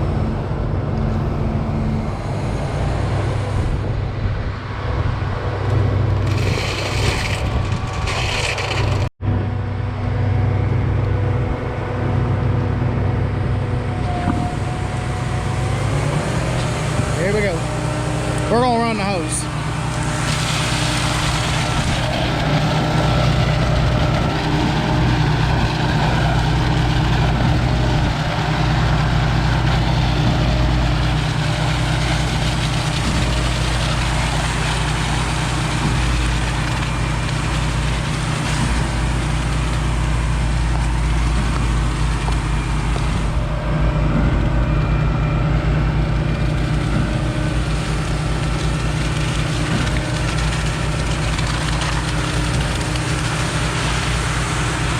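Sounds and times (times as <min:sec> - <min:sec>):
truck engine drone: 0:00.0 - 0:54.9
low hydraulic pulsing: 0:19.4 - 0:54.9.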